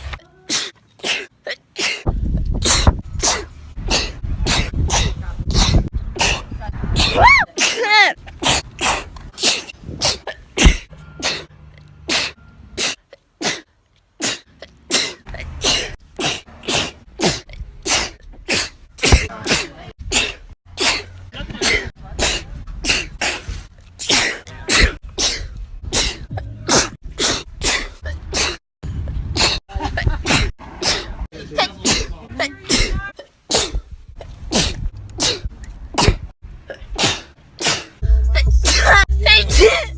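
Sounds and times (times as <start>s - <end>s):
woman sneezing: 0.4s - 2.1s, 2.7s - 11.5s, 24.0s - 28.6s, 38.6s - 39.9s.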